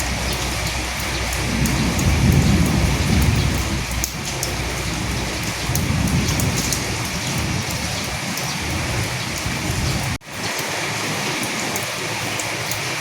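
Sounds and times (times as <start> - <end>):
low rumble: 0.0 - 10.2
rain falling on dead leaves: 0.0 - 13.0.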